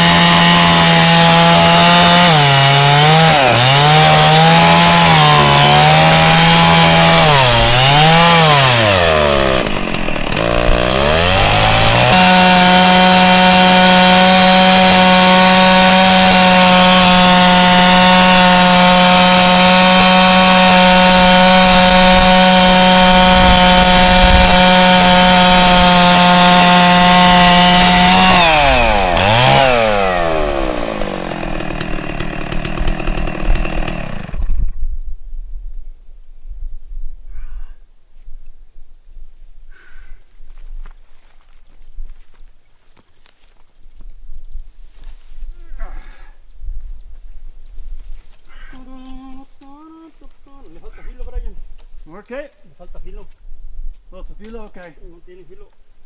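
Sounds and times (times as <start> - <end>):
chainsaw revving and cutting wood: 0.0 - 34.7.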